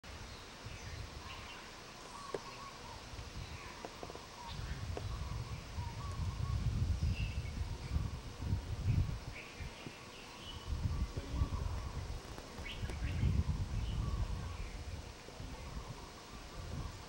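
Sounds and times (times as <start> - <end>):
birds chirping: 0.1 - 17.0.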